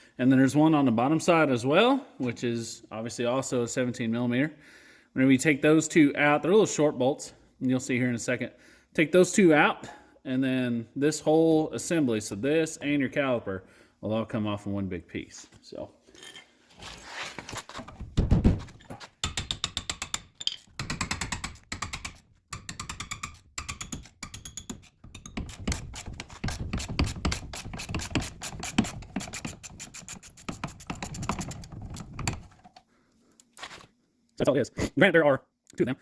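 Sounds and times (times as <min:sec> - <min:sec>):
heavy thump: 0:18.0 - 0:18.8
socket ratchet clicking: 0:19.2 - 0:32.2.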